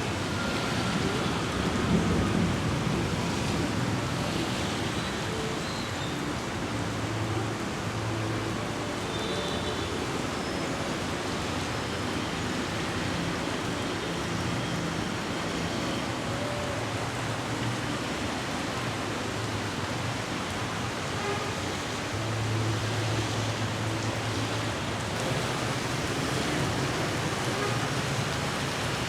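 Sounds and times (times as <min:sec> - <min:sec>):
heavy rain pouring: 0:00.0 - 0:29.0.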